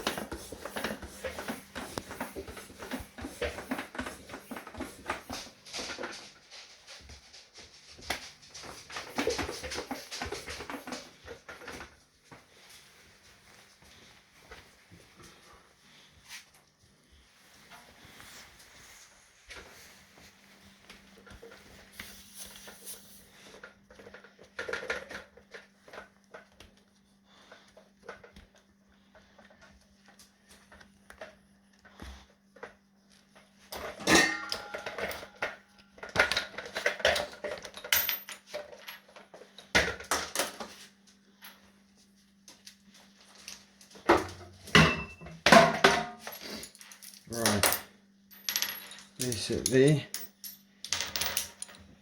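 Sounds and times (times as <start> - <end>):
metal tools clinking and clattering: 33.7 - 39.1, 44.7 - 51.8.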